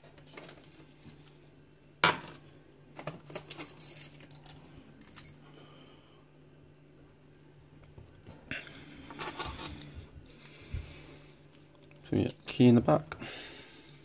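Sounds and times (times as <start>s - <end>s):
small metal objects clinking: 3.3s - 5.4s.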